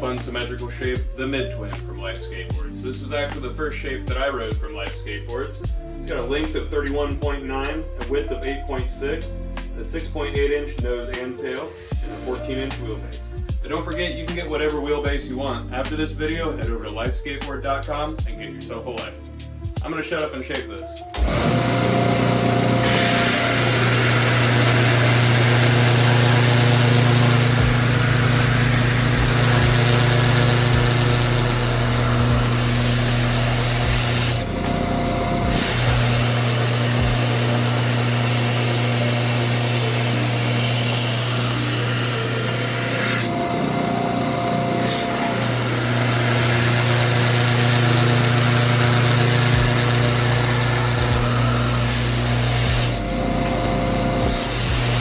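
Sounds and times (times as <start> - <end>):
power tool cutting wood: 0.0 - 5.4, 21.0 - 55.0
power tool motor hum: 21.1 - 55.0.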